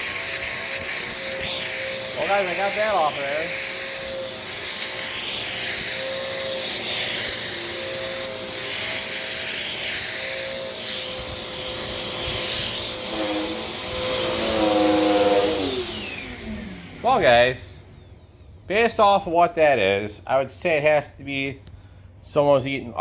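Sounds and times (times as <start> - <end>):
vacuum cleaner motor whine: 0.0 - 18.4.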